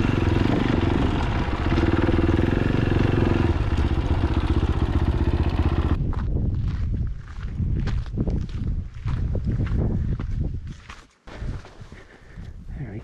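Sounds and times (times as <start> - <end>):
motorcycle engine running: 0.0 - 6.0.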